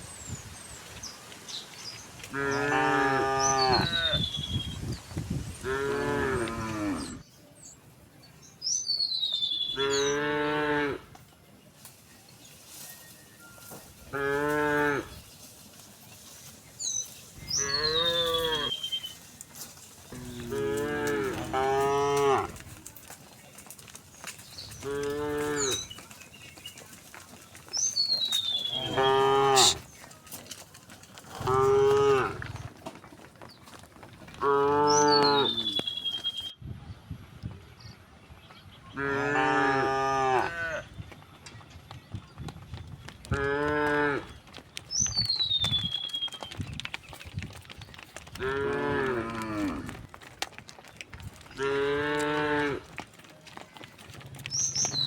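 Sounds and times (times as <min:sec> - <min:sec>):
cows mooing: 0:02.3 - 0:04.2, 0:05.6 - 0:07.2, 0:09.8 - 0:11.0, 0:14.1 - 0:15.1, 0:17.5 - 0:18.8, 0:20.1 - 0:22.6, 0:24.8 - 0:25.8, 0:28.6 - 0:29.9, 0:31.2 - 0:32.6, 0:34.3 - 0:35.8, 0:39.0 - 0:40.8, 0:48.4 - 0:50.0, 0:51.6 - 0:53.0.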